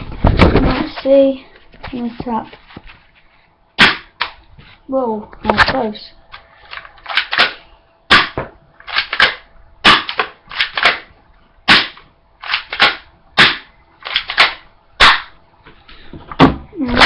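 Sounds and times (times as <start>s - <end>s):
airsoft pistol firing: 3.8s - 4.3s, 7.1s - 11.1s, 11.7s - 15.3s
pellets striking sunglasses: 3.8s - 4.4s, 7.0s - 11.1s, 11.7s - 15.3s.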